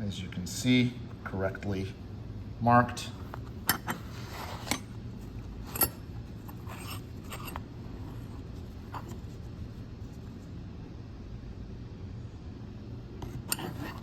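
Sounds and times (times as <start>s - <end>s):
steady low hum: 0.0s - 14.0s
metal tools clinking: 5.6s - 8.3s.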